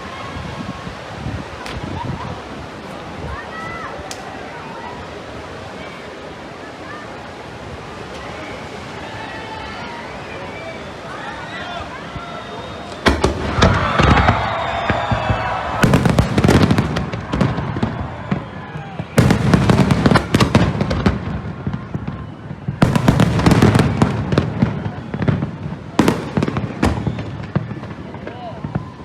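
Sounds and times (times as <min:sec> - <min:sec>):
fireworks crackling: 0:00.0 - 0:08.8, 0:11.9 - 0:29.0
fireworks exploding: 0:12.8 - 0:29.0.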